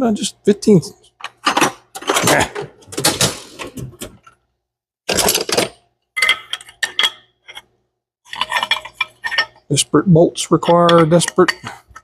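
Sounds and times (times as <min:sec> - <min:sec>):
steel wrenches clinking: 0:08.3 - 0:09.8, 0:10.5 - 0:12.0.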